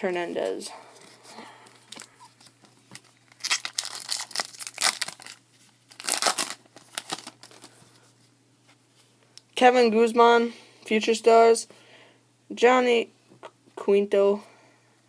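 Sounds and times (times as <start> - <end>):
wrapper tearing and crinkling: 2.9 - 7.8.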